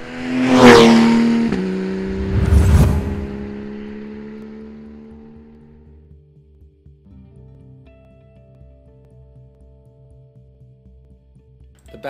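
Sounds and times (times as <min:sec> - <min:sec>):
car whooshing past: 0:00.0 - 0:04.4
low rumbling hit: 0:02.0 - 0:03.7.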